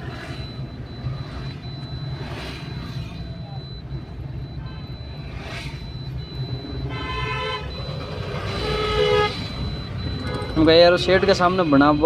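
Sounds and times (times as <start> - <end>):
vehicle horn tooting: 6.9 - 7.7, 8.5 - 9.5
engine running low rumble: 7.6 - 11.4.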